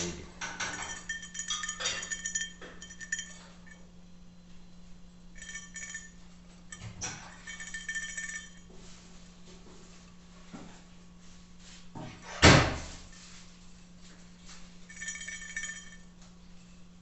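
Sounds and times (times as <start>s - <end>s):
metal cup rattling: 0.4s - 3.8s, 5.4s - 8.6s, 14.9s - 16.0s.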